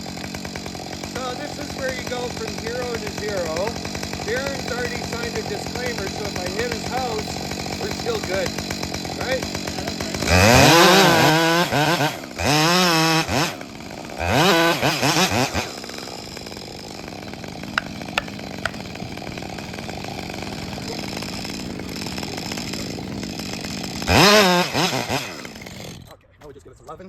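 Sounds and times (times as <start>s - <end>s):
chainsaw revving: 0.0s - 26.3s
sharp clicks: 17.7s - 18.9s.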